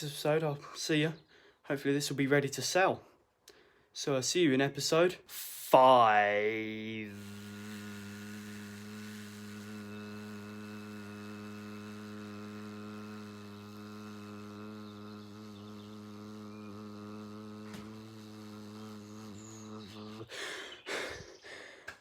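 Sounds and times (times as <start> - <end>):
low buzzy hum: 5.8 - 20.3.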